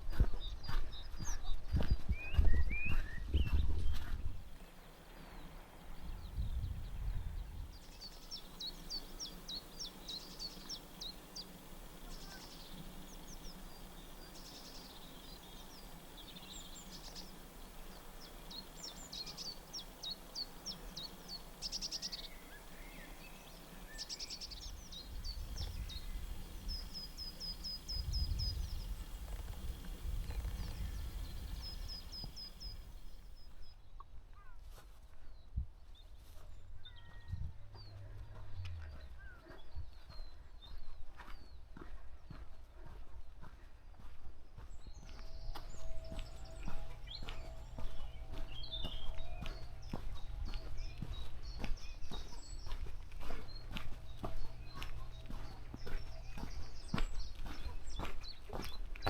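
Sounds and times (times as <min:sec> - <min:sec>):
small birds chirping: 0:00.0 - 0:59.0
low rumbling background: 0:37.2 - 0:40.3.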